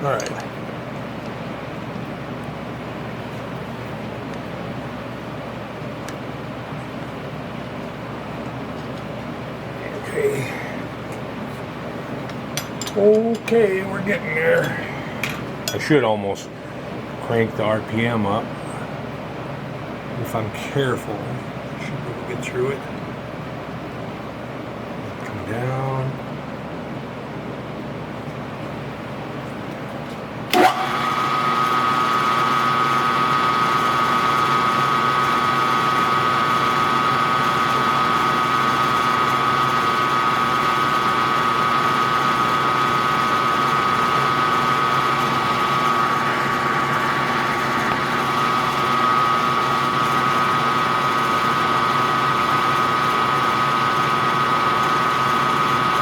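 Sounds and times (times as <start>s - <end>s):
drill spindle whining: 30.5s - 56.0s.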